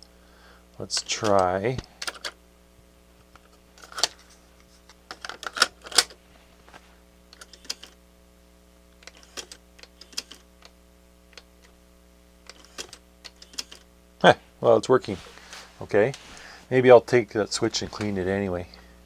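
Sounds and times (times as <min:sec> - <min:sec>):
faint steady hum: 0:00.0 - 0:19.0
cassette deck mechanism clicks: 0:01.0 - 0:02.4, 0:03.3 - 0:06.2, 0:07.3 - 0:08.0, 0:09.0 - 0:11.8, 0:12.4 - 0:13.9.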